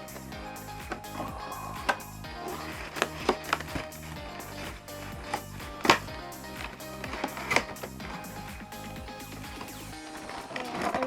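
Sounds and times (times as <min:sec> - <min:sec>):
background music with held notes: 0:00.0 - 0:11.0.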